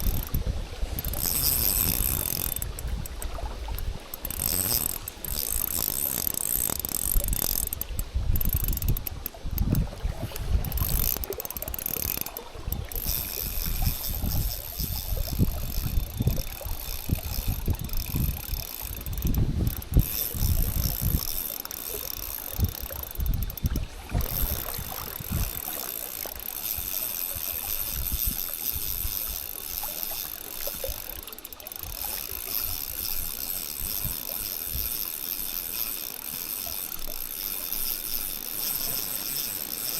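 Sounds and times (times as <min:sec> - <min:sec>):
wind buffeting microphone: 0:00.0 - 0:31.2
fishing reel clicking and whirring: 0:00.0 - 0:39.9.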